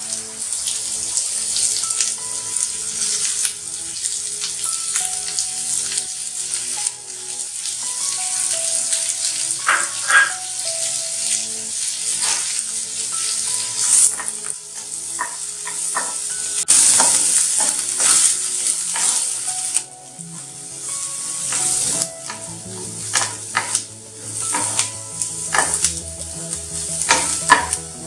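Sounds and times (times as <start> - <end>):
onions sizzling in a pan: 0.0 - 28.0
spatula scraping a pan: 9.6 - 10.4, 24.4 - 25.9.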